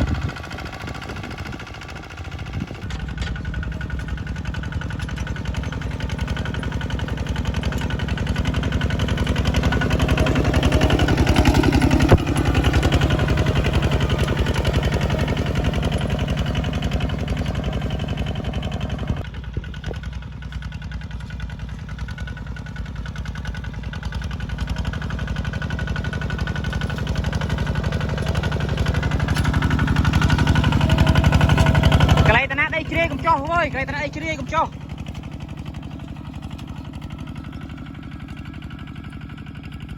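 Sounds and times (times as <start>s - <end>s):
bulldozer engine running: 0.0s - 39.9s.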